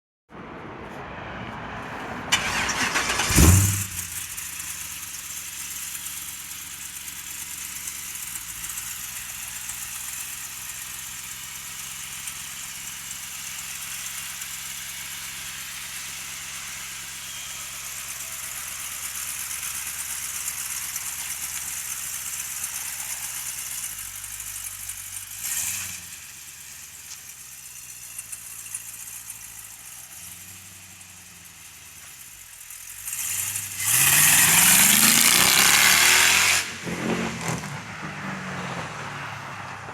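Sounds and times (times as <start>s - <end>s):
car engine cranking and idling: 0.3s - 39.9s
engine revving: 0.8s - 11.6s, 13.6s - 26.8s, 32.7s - 39.9s.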